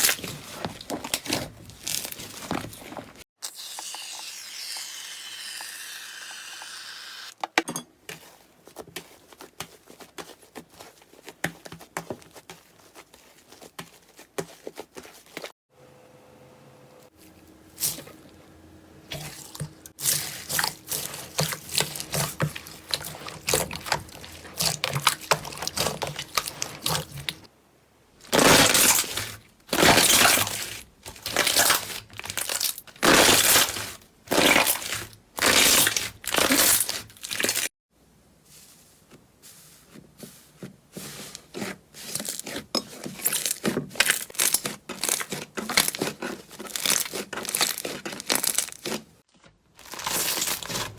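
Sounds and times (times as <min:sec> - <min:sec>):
slime squishing: 0:00.0 - 0:03.2, 0:19.1 - 0:27.5, 0:28.2 - 0:37.7, 0:39.8 - 0:50.9
slime crackling and popping: 0:46.7 - 0:48.9.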